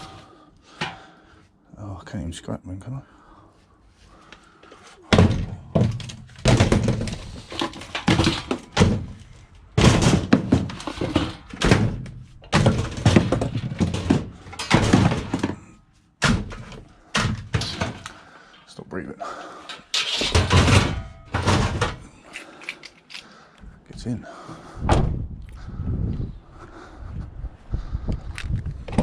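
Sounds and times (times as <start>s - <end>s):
scrap metal thunks and clattering: 5.0s - 18.4s, 19.6s - 22.1s.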